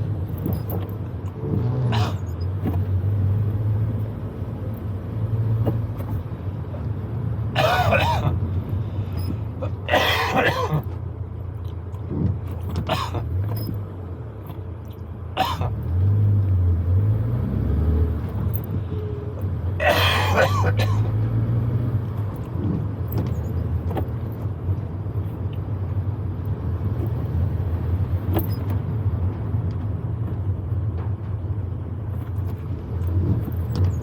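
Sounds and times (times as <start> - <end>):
man coughing and clearing throat: 1.8 - 2.2, 7.6 - 8.4, 9.6 - 10.9, 12.8 - 13.3, 15.4 - 15.8, 19.8 - 21.2.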